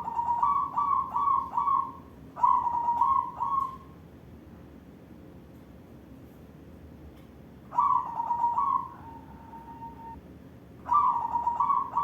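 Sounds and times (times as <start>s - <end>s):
dove cooing: 0.0s - 3.9s, 7.7s - 10.2s, 10.9s - 12.0s.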